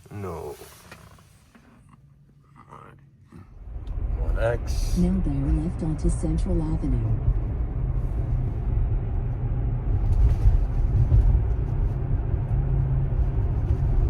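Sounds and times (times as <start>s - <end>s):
tyre and road noise in car cabin: 0.0s - 2.4s, 3.0s - 14.0s.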